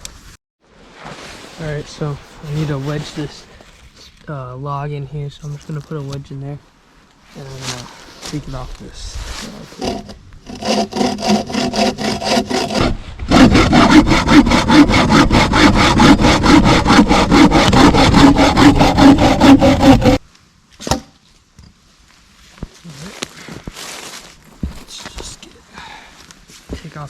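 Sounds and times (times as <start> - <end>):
hand saw cutting wood: 9.4 - 20.2.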